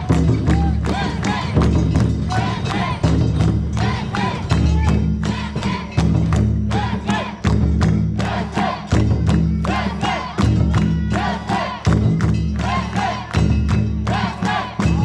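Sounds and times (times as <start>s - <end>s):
crowd voices: 0.0s - 6.0s, 8.2s - 12.0s, 12.6s - 13.4s, 14.1s - 15.0s.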